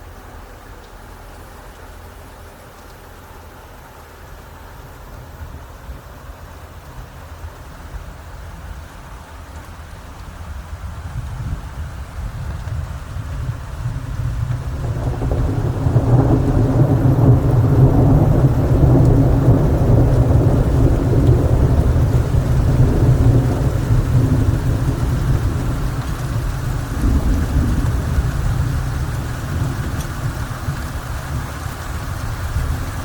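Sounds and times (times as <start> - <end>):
steady rain: 0.0 - 33.0
thunder rolling: 10.5 - 33.0.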